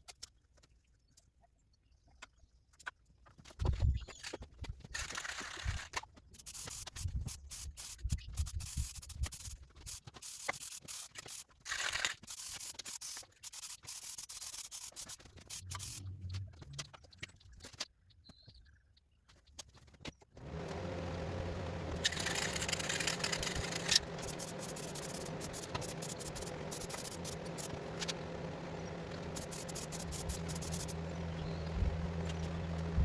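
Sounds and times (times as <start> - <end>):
sanding strokes: 20.4 - 33.0.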